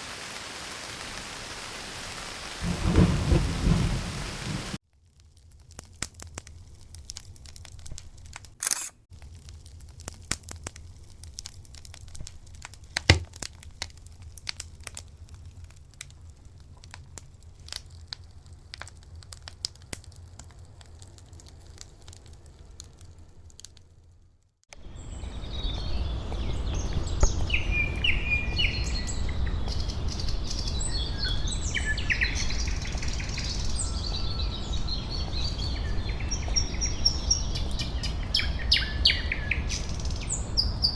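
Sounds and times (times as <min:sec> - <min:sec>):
low rumble: 0:02.6 - 0:04.8
scattered clicks and crackles: 0:02.6 - 0:24.8
small birds chirping: 0:24.8 - 0:40.9.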